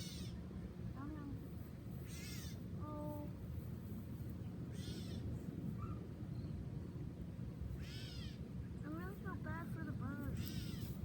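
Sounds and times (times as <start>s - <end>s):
bird calling: 2.0s - 2.6s, 10.4s - 11.0s.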